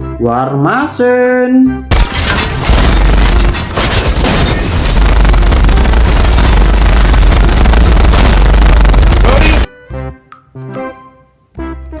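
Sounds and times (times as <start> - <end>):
explosion sound effects: 1.9 - 9.7
rapid gunfire: 1.9 - 9.7
heavy low rumble: 4.5 - 9.7.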